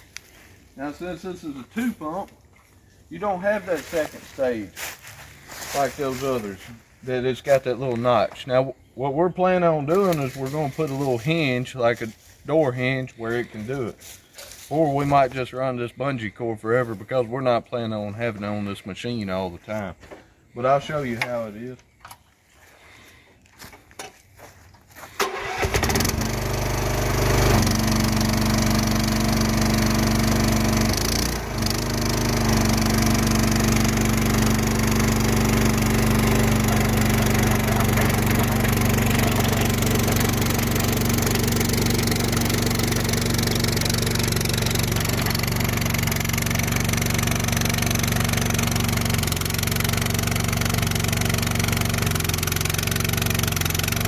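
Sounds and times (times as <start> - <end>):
skid steer engine starting and running: 24.9 - 54.0.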